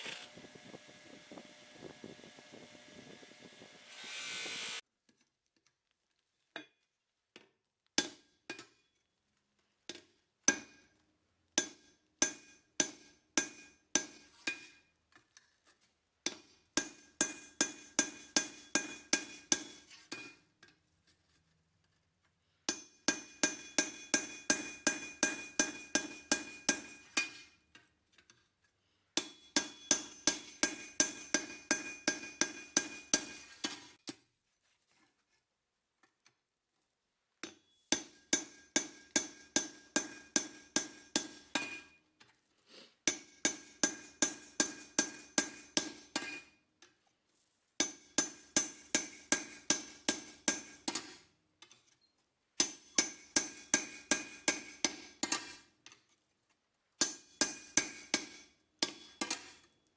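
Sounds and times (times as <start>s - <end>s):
hammer striking steel on anvil: 10.5s - 10.9s, 11.6s - 14.8s, 16.3s - 20.4s, 22.7s - 27.5s, 29.2s - 34.0s, 37.4s - 42.0s, 43.1s - 46.5s, 47.8s - 51.2s, 52.6s - 55.6s, 57.0s - 59.7s.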